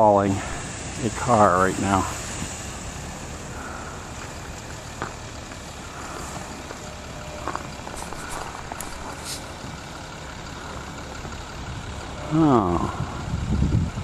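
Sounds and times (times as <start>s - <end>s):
tow truck engine running: 0.0s - 14.0s
short hiss: 7.9s - 9.6s.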